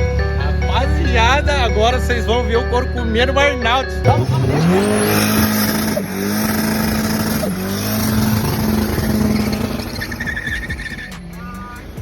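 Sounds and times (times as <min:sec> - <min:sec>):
car engine revving high: 0:00.0 - 0:12.0.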